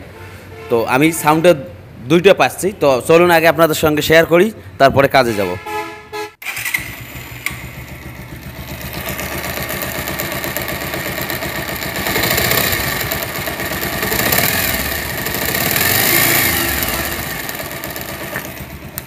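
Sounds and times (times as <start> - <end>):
motorcycle engine revving: 6.4 - 19.0
engine knocking: 7.6 - 19.0.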